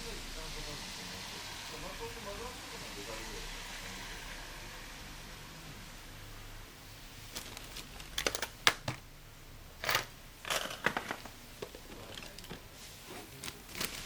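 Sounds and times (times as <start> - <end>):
steady background hiss: 0.0 - 14.0.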